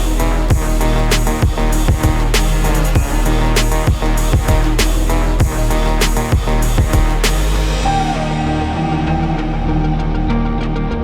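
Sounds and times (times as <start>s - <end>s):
deep kick drum: 0.0s - 8.2s
bass and synth tones: 0.0s - 11.0s.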